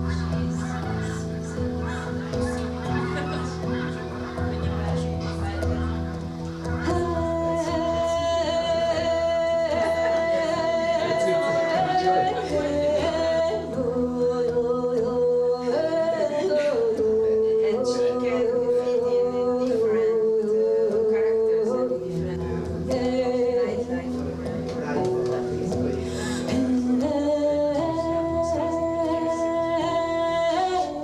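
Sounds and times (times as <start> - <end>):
person singing long held notes: 6.7 - 25.1.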